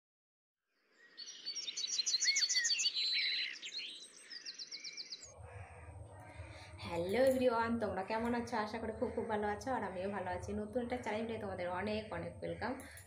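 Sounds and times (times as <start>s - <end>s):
birds chirping: 1.0s - 13.0s
low hum: 5.3s - 13.0s.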